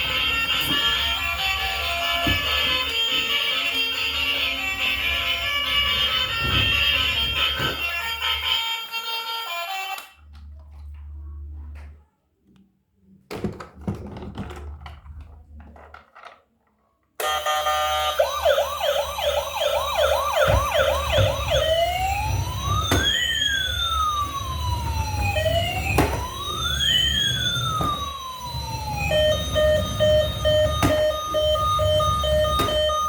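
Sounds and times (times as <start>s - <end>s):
toy siren yelping and wailing: 17.2s - 33.0s.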